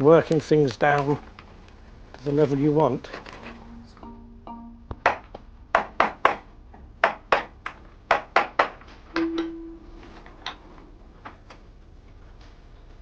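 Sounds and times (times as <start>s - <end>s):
short held musical note: 3.4s - 5.0s
mallet striking a gouge into wood: 5.8s - 6.4s.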